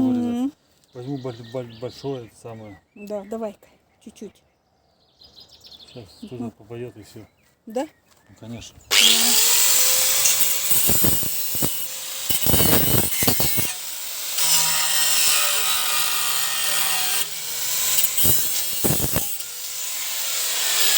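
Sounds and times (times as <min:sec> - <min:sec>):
angle grinder cutting metal: 0:08.9 - 0:20.9.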